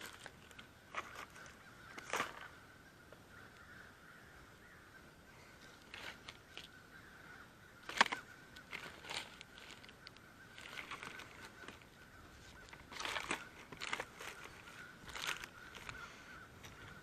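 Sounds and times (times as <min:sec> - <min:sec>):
crows cawing: 0:00.5 - 0:17.0.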